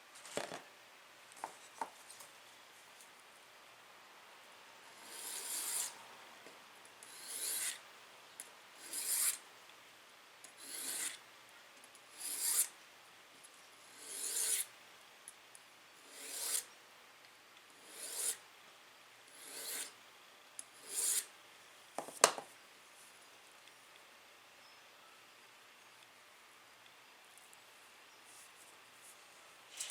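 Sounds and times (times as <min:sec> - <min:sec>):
file strokes on steel: 0:04.9 - 0:06.0, 0:07.1 - 0:07.8, 0:08.8 - 0:09.4, 0:10.6 - 0:11.2, 0:12.1 - 0:12.7, 0:13.9 - 0:14.7, 0:16.0 - 0:16.7, 0:17.8 - 0:18.4, 0:19.3 - 0:20.0, 0:20.8 - 0:21.3.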